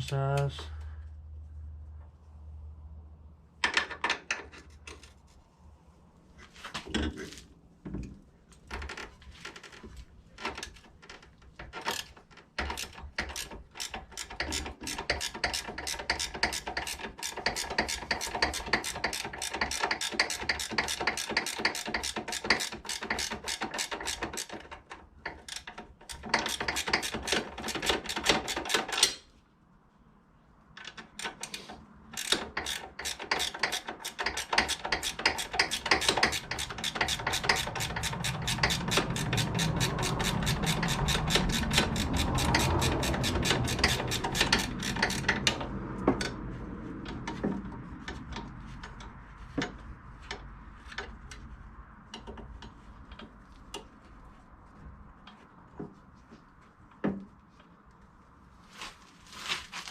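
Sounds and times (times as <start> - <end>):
hand ratchet clicking: 10.4 - 29.2, 30.8 - 46.4.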